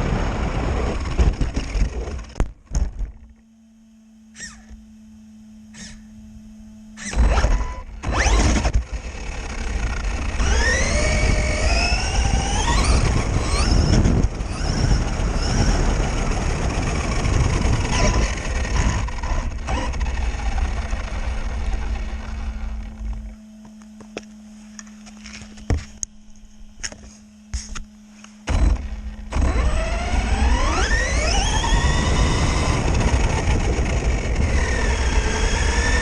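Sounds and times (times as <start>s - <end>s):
rc car electric motor whine: 0.0s - 36.0s.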